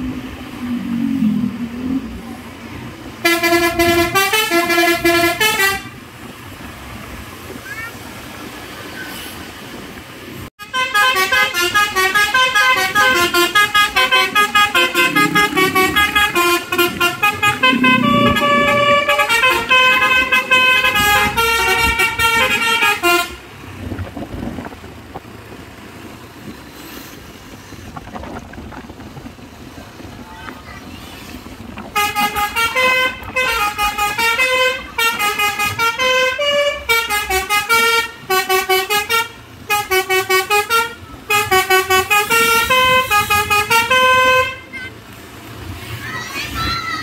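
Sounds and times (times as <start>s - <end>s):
road traffic noise: 0.0s - 47.0s
multi-tone truck horn melody: 3.2s - 6.0s, 10.6s - 23.6s, 31.9s - 45.0s.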